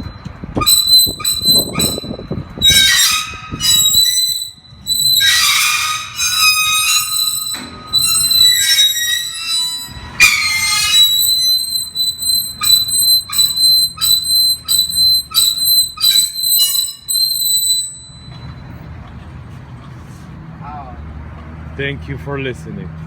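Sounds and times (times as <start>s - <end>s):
shrill high-pitched squeal: 0.0s - 18.8s
harsh rasping bursts: 0.7s - 18.1s.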